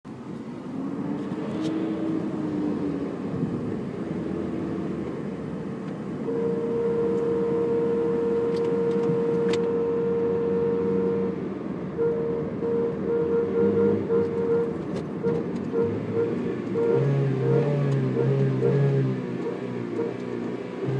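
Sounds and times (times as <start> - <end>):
engine running: 0.1 - 20.9
fuel regulator humming tone: 6.2 - 20.9.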